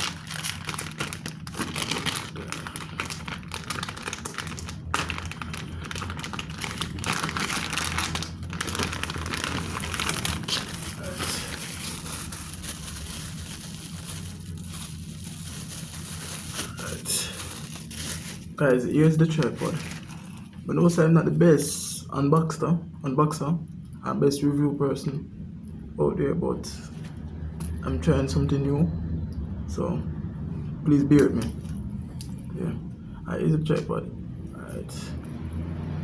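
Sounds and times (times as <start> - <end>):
packaging crinkling and rustling: 0.0 - 20.7.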